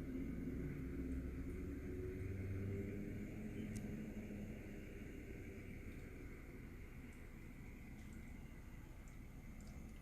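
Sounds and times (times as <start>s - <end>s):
humidifier hum and hiss: 3.2s - 10.0s
soft ticks: 3.7s - 3.9s.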